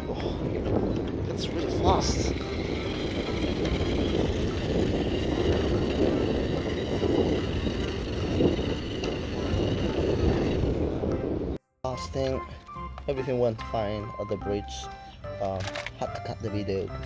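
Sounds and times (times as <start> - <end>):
wheels on the ground: 0.0 - 11.5
toy car motor whine: 1.6 - 10.8.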